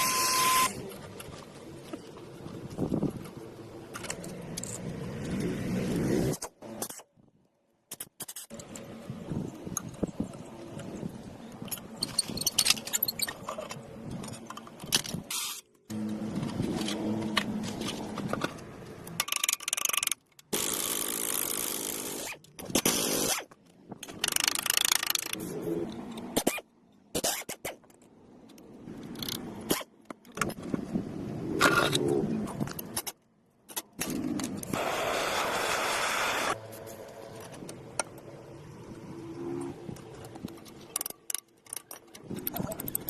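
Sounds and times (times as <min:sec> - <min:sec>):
metal parts scraping and clattering: 0:03.9 - 0:07.1, 0:11.6 - 0:30.7, 0:39.9 - 0:43.0.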